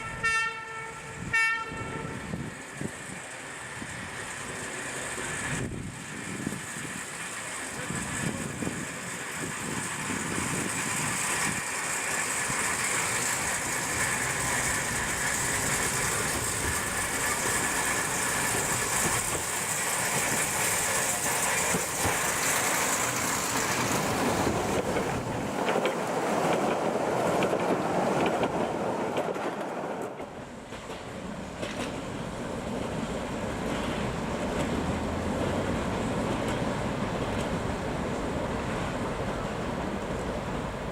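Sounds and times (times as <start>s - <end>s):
small train rolling and rattling: 0.0s - 40.9s
wheel clicks over rail joints: 24.6s - 32.1s.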